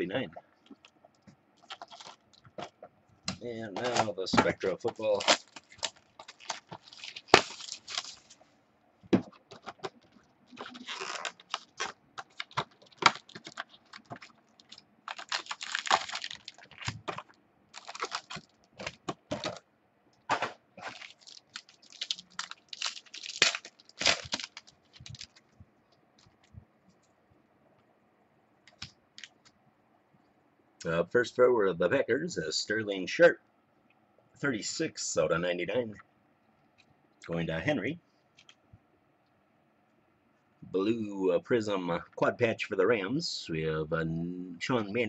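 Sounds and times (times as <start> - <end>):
packaging rustling and tearing: 1.6 - 2.7, 3.8 - 8.4, 9.3 - 19.6, 20.8 - 25.5.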